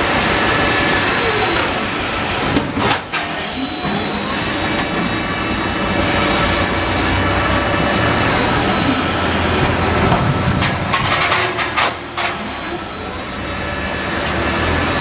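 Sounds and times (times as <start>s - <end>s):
roll-forming machine running: 4.2s - 14.2s.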